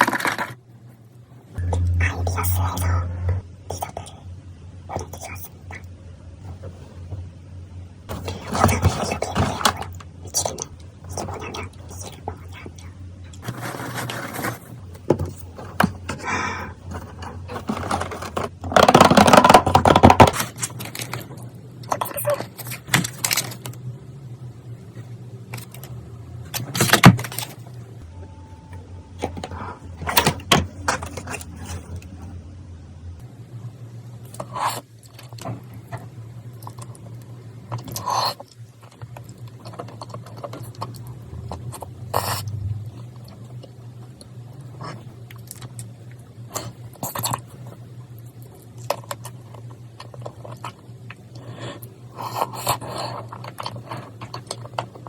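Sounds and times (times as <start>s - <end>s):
steady low hum: 0.0s - 55.0s
objects being handled: 13.4s - 23.8s.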